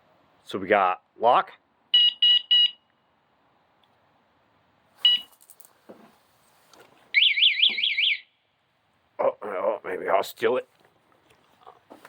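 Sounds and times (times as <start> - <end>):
short warning beep: 2.0 - 2.8, 5.0 - 5.3
fast warbling alarm siren: 7.2 - 8.4.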